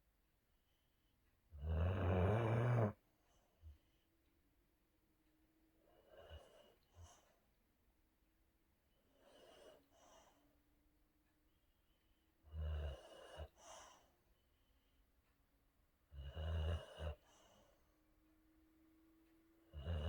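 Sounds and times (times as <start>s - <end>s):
dog snoring: 1.6s - 3.0s, 5.8s - 7.3s, 9.1s - 10.4s, 12.4s - 14.1s, 16.1s - 17.7s, 19.7s - 20.0s
dog breathing softly: 5.8s - 7.6s, 9.0s - 10.7s, 11.6s - 15.0s, 16.8s - 18.0s.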